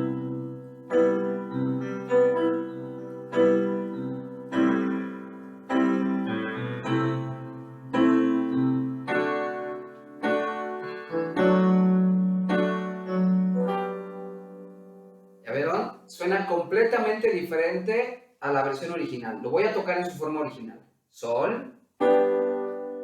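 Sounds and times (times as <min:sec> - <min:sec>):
keyboard chords with bass notes: 0:00.0 - 0:16.0, 0:22.0 - 0:23.0.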